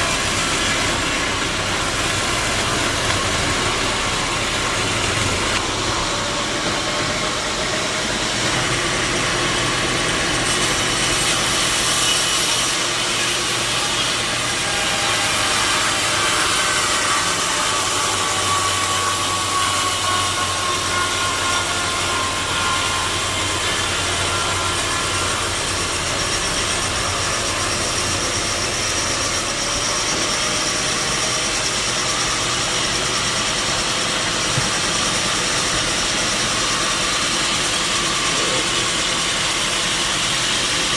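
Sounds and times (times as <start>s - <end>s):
sawmill saw cutting wood: 0.0s - 40.9s.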